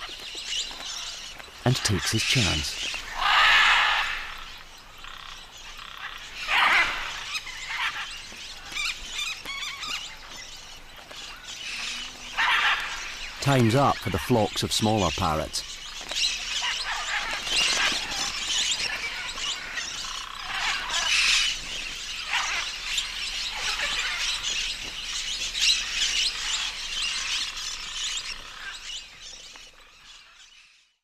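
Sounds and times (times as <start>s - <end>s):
parrots squawking: 1.7s - 4.5s, 11.8s - 14.2s, 16.5s - 21.6s, 22.2s - 24.4s.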